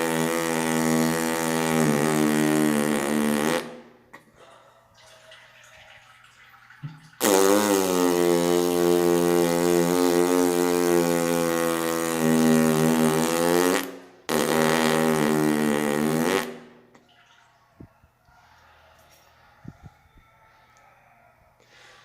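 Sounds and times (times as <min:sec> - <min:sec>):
long loud farts: 0:00.0 - 0:03.9, 0:07.2 - 0:16.8.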